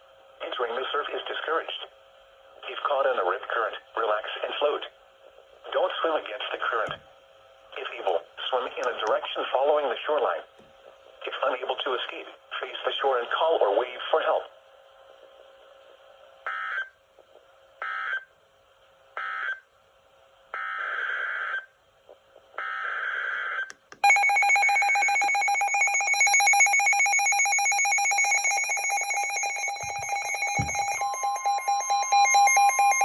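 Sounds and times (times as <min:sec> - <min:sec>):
steady alert tone: 0:27.6 - 0:33.0.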